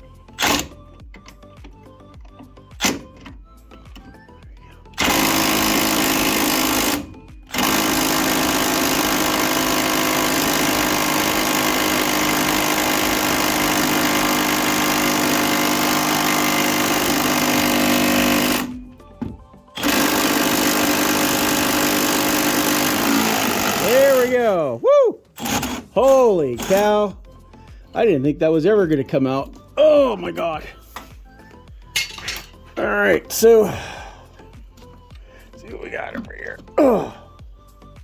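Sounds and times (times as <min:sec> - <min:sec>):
power wrench running: 0:00.4 - 0:04.2, 0:04.8 - 0:24.6, 0:25.3 - 0:27.2.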